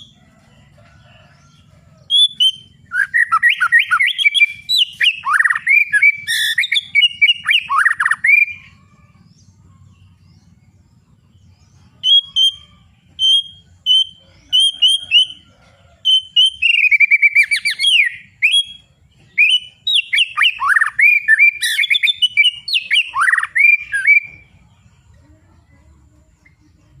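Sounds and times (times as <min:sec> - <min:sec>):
bird whistled song: 0:01.4 - 0:08.8, 0:11.7 - 0:24.7.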